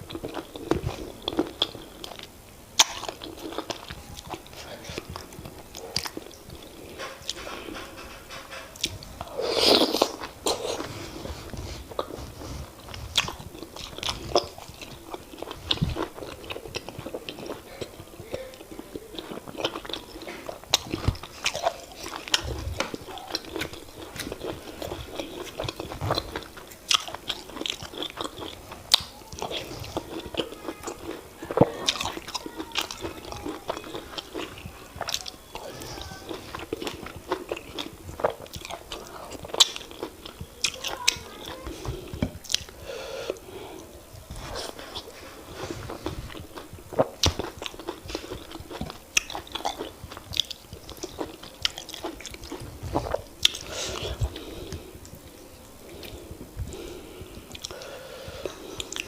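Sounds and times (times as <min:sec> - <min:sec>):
wet chewing and mouth sounds: 0:00.0 - 0:59.0.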